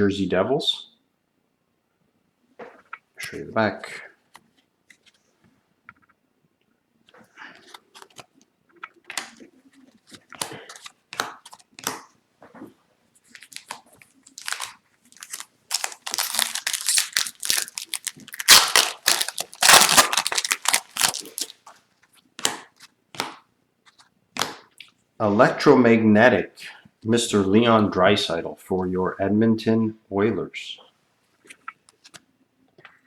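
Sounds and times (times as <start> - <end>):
cards rustling: 13.2 - 21.7
foil wrapper crinkling and tearing: 13.3 - 21.6.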